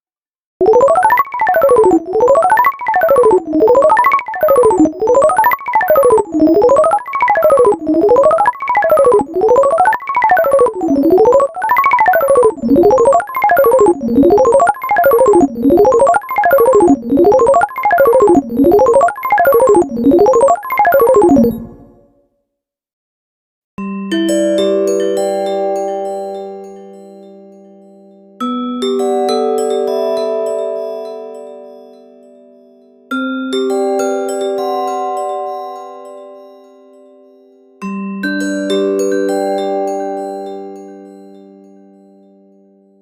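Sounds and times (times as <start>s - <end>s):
synthesized keyboard ringtone melody: 0.6s - 22.0s.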